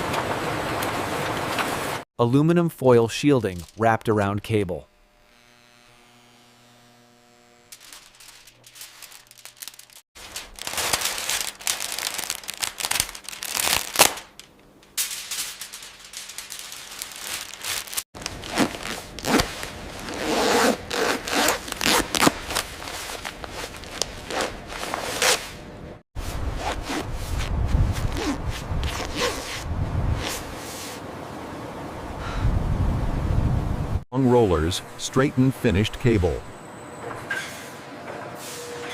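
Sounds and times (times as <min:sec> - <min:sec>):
scraping crackling rustle: 0:07.7 - 0:14.2, 0:15.0 - 0:25.5.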